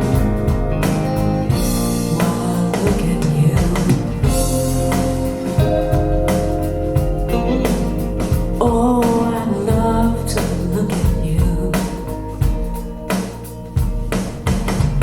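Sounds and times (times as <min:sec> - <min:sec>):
pop-rock song over speakers: 0:00.0 - 0:15.0
person singing: 0:02.0 - 0:06.4, 0:07.3 - 0:12.8.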